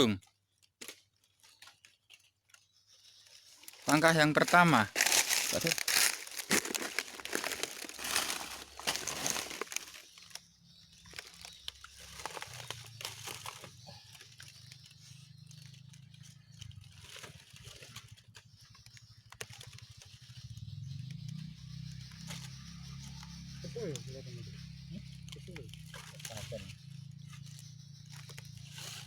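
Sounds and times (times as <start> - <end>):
crinkling and rustling: 0.2 - 20.2.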